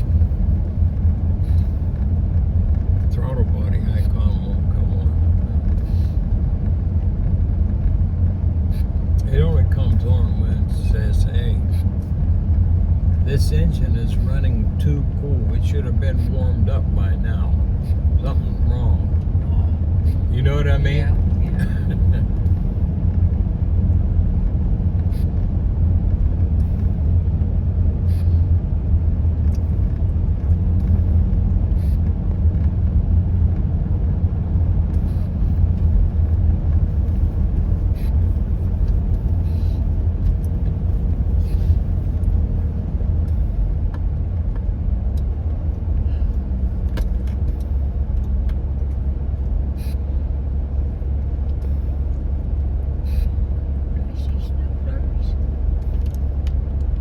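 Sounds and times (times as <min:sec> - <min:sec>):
car interior driving rumble: 0:00.0 - 0:57.0.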